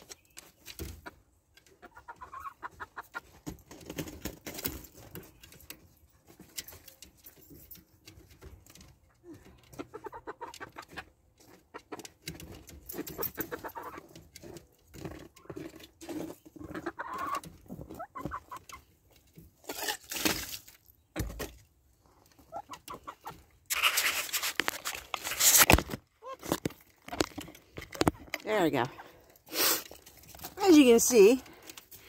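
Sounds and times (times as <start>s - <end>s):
hens clucking: 0.9s - 3.5s, 9.4s - 14.3s, 15.1s - 19.8s, 22.2s - 24.7s
rustling: 23.7s - 32.0s.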